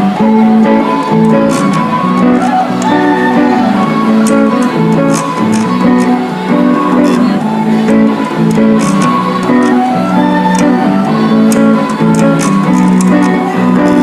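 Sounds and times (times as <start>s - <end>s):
plucked string music: 0.0s - 14.0s.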